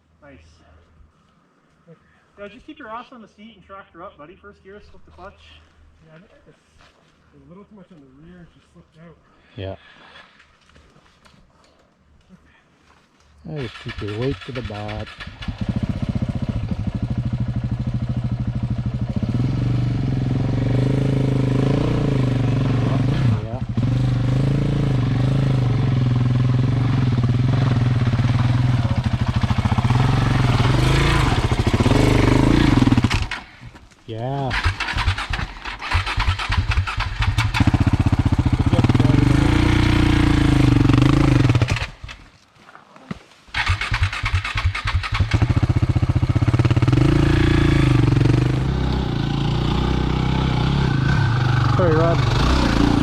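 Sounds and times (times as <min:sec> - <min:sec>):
motorcycle engine at low revs: 0:13.8 - 0:33.6, 0:34.5 - 0:42.2, 0:43.6 - 0:53.0.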